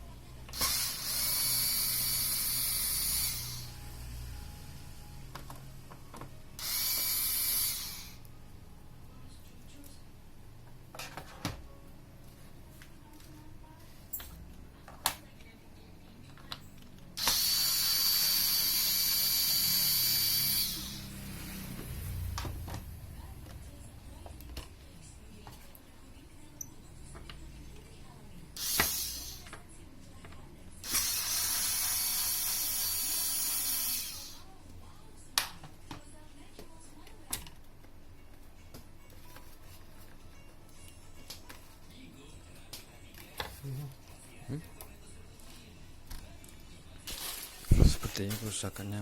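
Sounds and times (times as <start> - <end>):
power drill running: 0.5 - 3.9, 6.6 - 8.2, 17.2 - 21.7, 28.6 - 29.4, 30.8 - 34.4.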